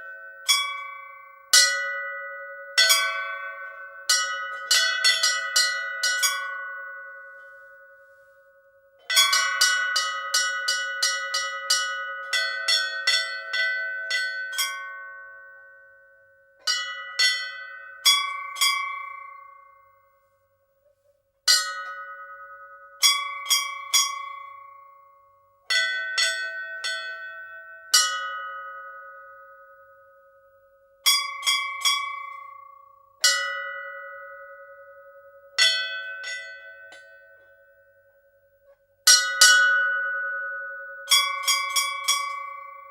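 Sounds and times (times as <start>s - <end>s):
temple bell ringing: 0.0s - 20.2s, 21.5s - 42.9s.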